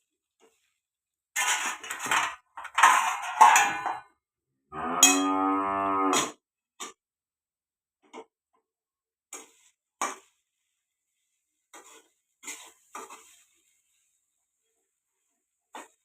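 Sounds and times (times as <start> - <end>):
scraping in a cooking pan: 0.0 - 4.0, 9.3 - 16.0
cow mooing: 4.7 - 6.3.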